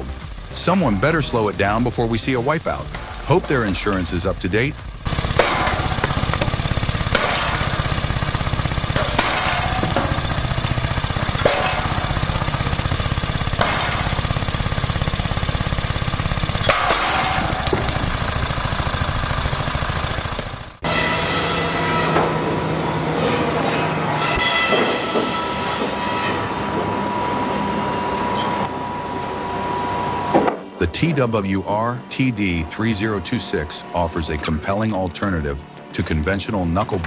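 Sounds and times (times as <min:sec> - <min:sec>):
heavy machine engine knocking: 0:00.0 - 0:20.8
machine low hum: 0:00.0 - 0:37.0.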